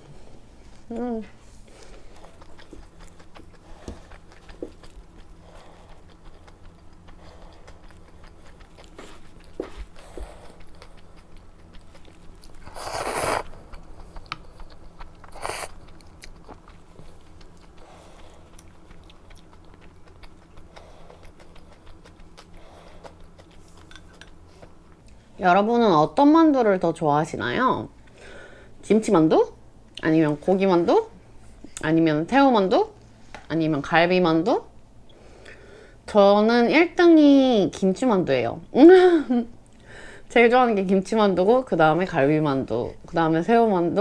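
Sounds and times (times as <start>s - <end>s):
chewing and biting: 1.6s - 25.2s.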